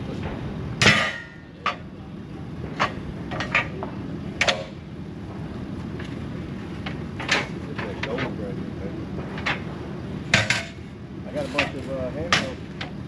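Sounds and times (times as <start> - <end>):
low engine rumble: 0.0 - 13.0
sharp knocks or clanks: 10.3 - 10.8, 11.6 - 13.0.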